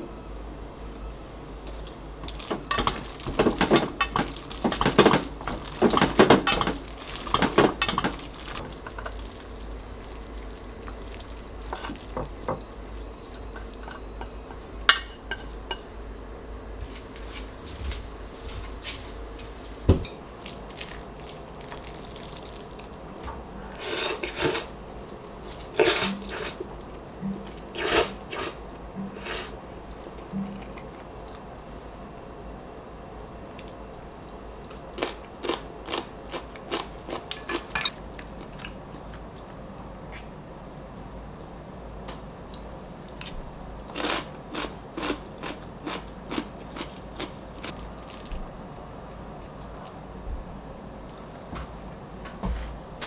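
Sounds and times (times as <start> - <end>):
dishes and utensils clinking: 2.3 - 9.2, 13.5 - 15.9, 37.3 - 38.0.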